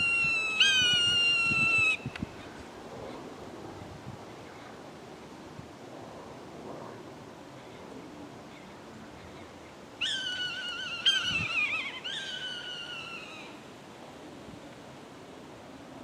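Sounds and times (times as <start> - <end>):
bird calling wavering notes: 0.0 - 2.0, 10.0 - 13.6.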